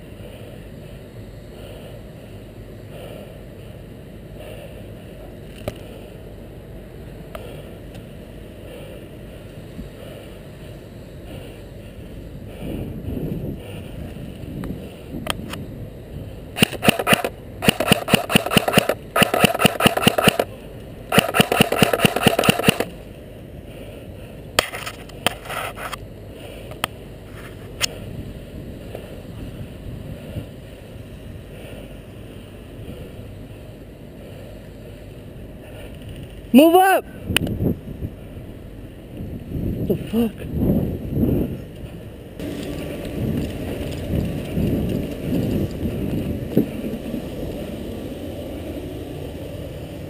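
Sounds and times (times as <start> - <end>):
wind rumble on microphone: 11.2 - 16.6, 27.2 - 31.8, 37.1 - 50.0
airsoft rifle bursts: 16.6 - 20.5, 21.1 - 22.9.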